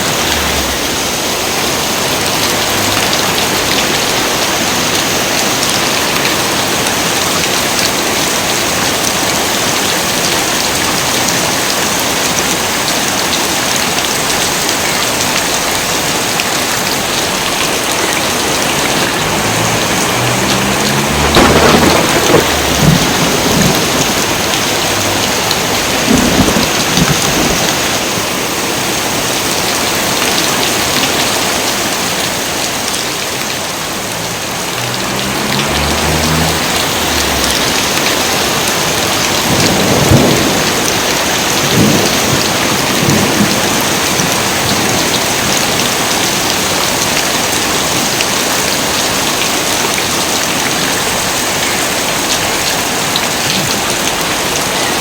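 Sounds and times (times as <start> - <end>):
heavy rain pouring: 0.0 - 55.0
thunder rumbling and cracking: 18.1 - 28.3, 34.0 - 46.5.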